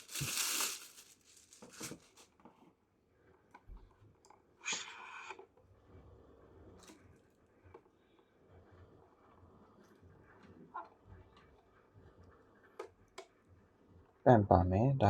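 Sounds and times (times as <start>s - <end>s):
plastic packaging crinkling: 0.0s - 2.3s.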